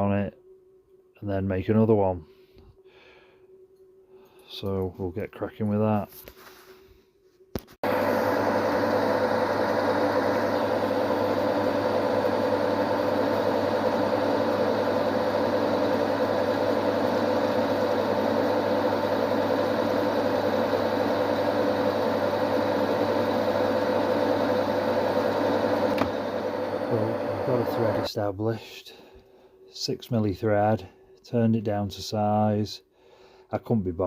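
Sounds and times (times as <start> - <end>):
metal lathe running: 7.9 - 28.1.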